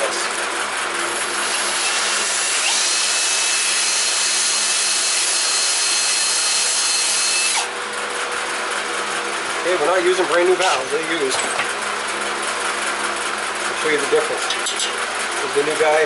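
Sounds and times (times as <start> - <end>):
electric drill whining: 1.1 - 7.8.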